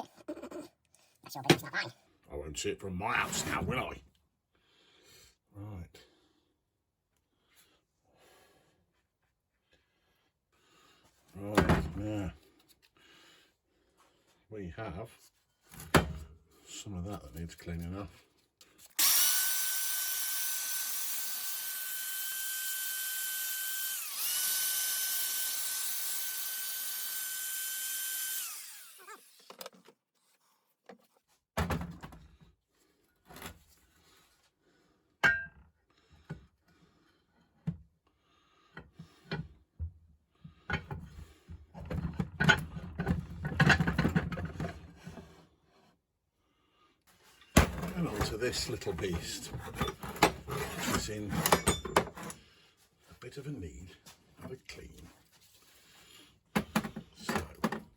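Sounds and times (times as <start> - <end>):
electric drill whining: 19.0 - 29.7.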